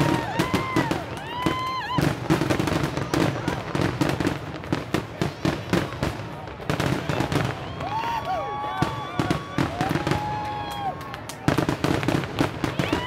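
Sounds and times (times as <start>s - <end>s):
fireworks bursts and crackles: 0.0s - 13.0s
whistling fireworks: 0.0s - 13.0s.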